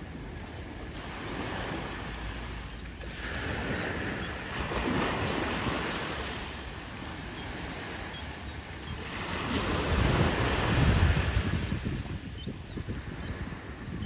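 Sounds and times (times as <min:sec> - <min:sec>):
wind buffeting microphone: 0:09.4 - 0:14.0.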